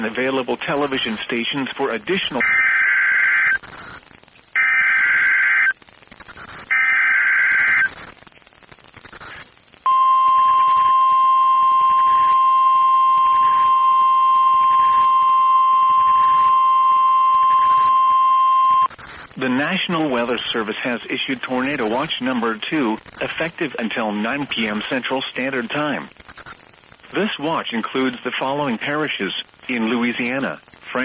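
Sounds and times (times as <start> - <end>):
harsh buzzing data bursts: 0.0 - 19.4, 20.4 - 27.2
steady warning alarm tone: 9.9 - 18.9.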